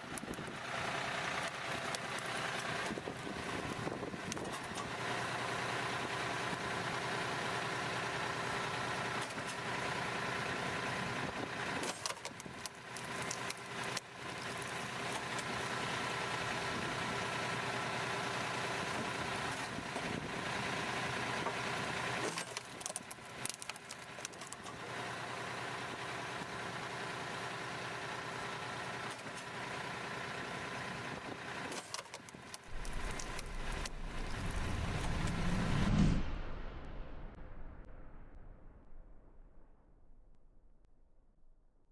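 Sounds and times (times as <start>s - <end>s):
tractor engine running: 0.0s - 35.9s
uneven crackly sound: 31.8s - 37.0s.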